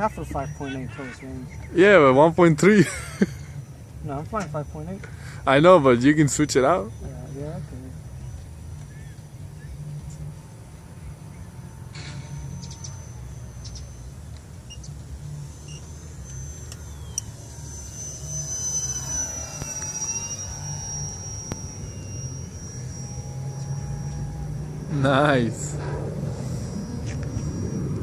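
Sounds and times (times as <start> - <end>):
model plane motor whining: 0.0 - 28.0
steady low rumble: 0.0 - 28.0.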